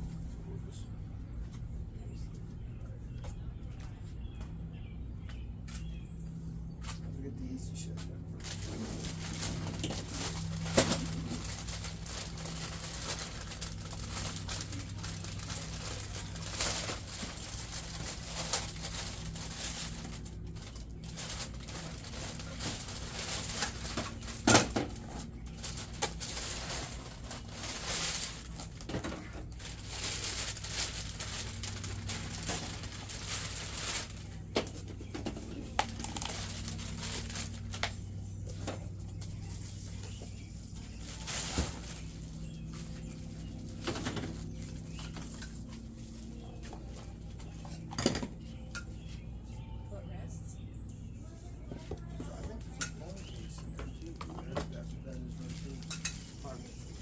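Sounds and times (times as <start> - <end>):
steady low hum: 0.0 - 57.0
packaging rustling and crinkling: 8.3 - 47.9.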